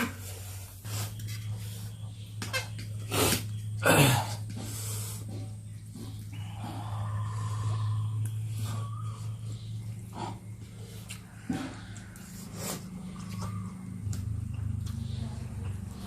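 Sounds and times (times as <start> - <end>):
low electrical hum: 0.0 - 16.0
people breathing hard: 3.3 - 13.9.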